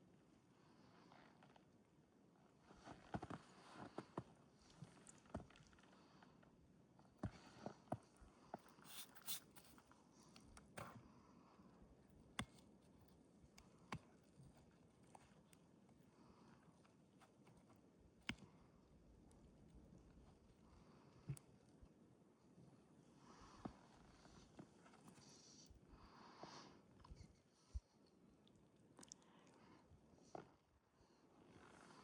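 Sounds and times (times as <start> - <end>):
soft rustle: 8.4 - 9.9.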